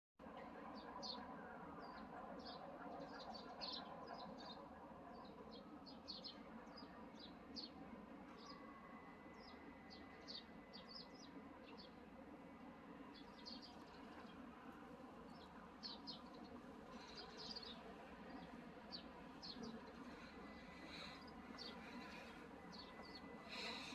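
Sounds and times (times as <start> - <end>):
low background hum: 14.1 - 23.9
small birds chirping: 15.3 - 23.9.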